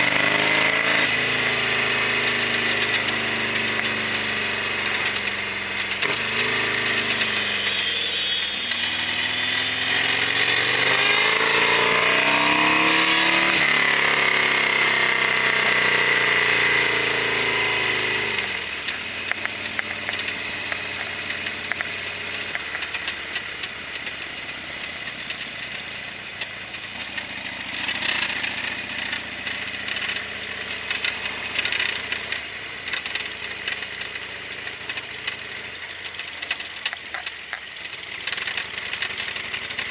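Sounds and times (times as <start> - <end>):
motorcycle engine revving: 0.0 - 39.9
light rattling ticks: 30.9 - 39.9.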